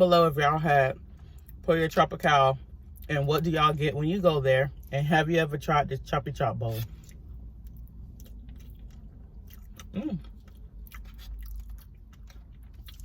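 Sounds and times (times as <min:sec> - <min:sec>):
crunchy chewing: 0:06.8 - 0:13.0.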